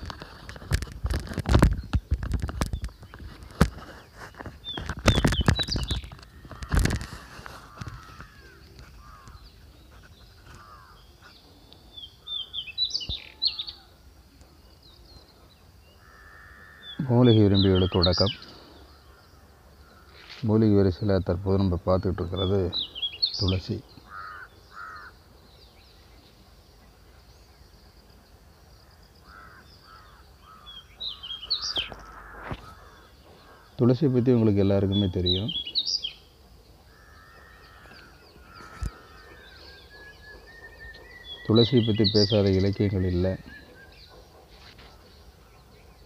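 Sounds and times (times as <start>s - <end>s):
birds calling: 0.0s - 46.0s
faint background noise: 0.0s - 46.0s
high bird chirps: 4.6s - 6.7s, 8.4s - 13.9s, 29.2s - 33.7s, 34.9s - 36.3s
crows cawing: 6.1s - 9.7s, 10.4s - 11.2s, 16.0s - 20.4s, 24.0s - 25.3s, 29.2s - 33.9s, 36.8s - 40.2s.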